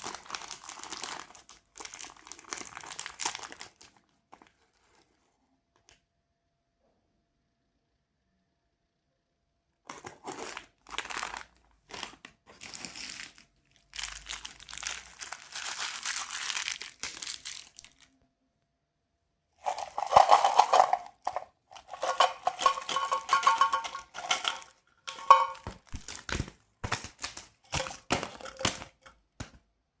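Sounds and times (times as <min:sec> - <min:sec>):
sweet wrappers crinkling: 0:00.0 - 0:05.3, 0:09.9 - 0:18.2, 0:19.6 - 0:29.6.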